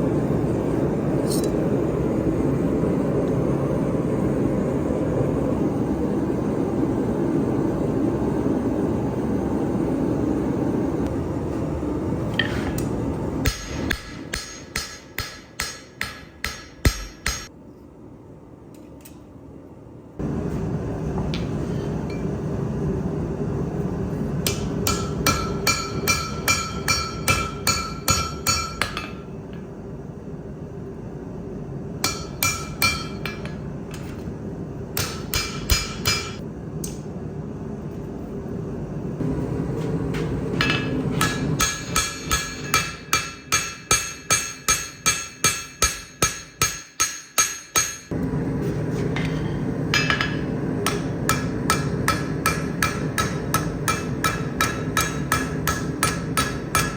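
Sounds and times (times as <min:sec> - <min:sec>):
steady low hum: 0:00.0 - 0:56.9
hammer striking steel on anvil: 0:01.2 - 0:01.6, 0:12.3 - 0:17.5, 0:24.4 - 0:29.4, 0:32.0 - 0:34.1, 0:35.0 - 0:37.0, 0:40.1 - 0:48.2, 0:49.1 - 0:56.9.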